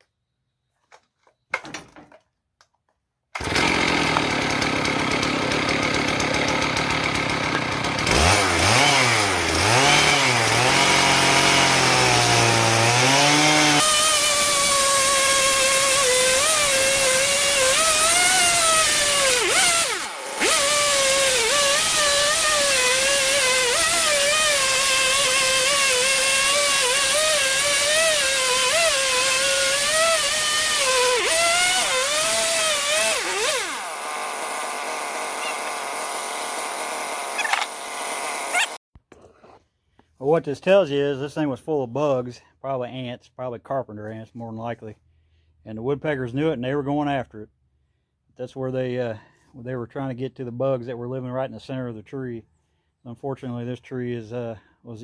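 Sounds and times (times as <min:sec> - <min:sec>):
chainsaw cutting log: 0:03.4 - 0:38.8.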